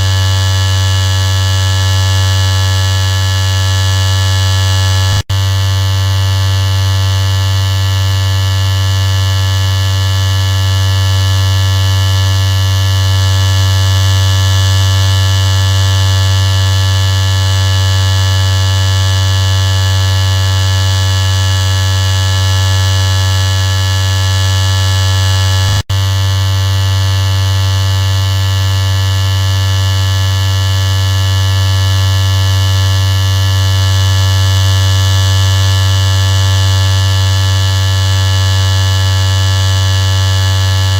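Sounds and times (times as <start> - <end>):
electric shaver buzzing: 0.0 - 40.9.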